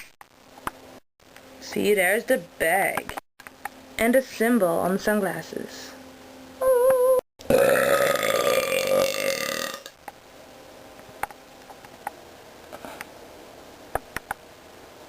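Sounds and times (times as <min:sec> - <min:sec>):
person burping: 0:07.5 - 0:09.9.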